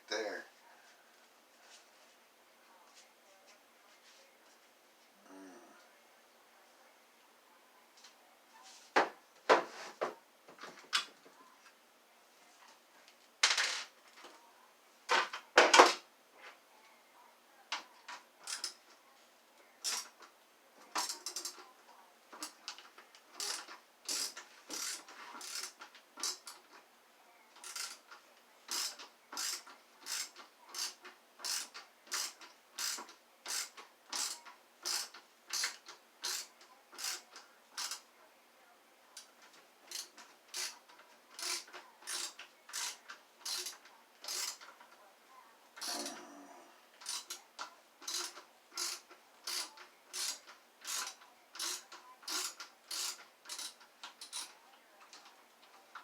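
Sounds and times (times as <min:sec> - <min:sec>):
tools knocking and scraping: 0:08.9 - 0:11.2, 0:48.0 - 0:54.5.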